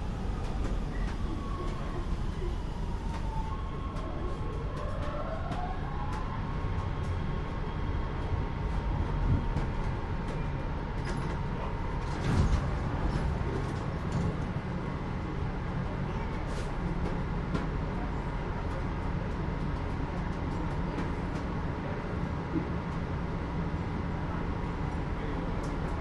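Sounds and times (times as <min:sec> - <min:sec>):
train whine: 0:00.0 - 0:15.9
train rumbling: 0:00.0 - 0:26.0.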